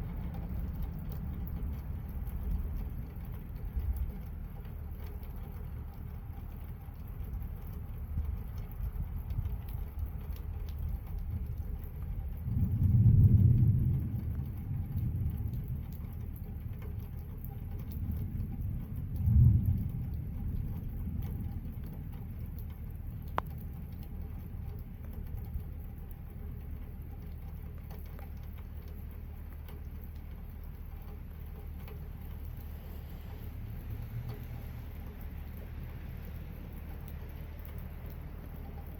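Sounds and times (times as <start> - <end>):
light rain patter: 0.0 - 38.9
water dripping: 0.0 - 38.9
distant thunder rumbling: 12.3 - 16.3, 18.1 - 22.1.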